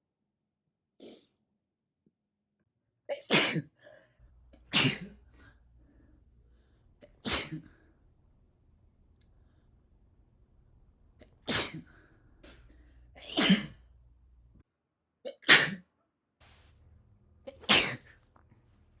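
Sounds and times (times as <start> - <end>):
person sneezing: 3.1 - 3.8, 4.6 - 5.6, 7.0 - 7.8, 11.2 - 13.9, 15.3 - 15.9, 17.5 - 18.2.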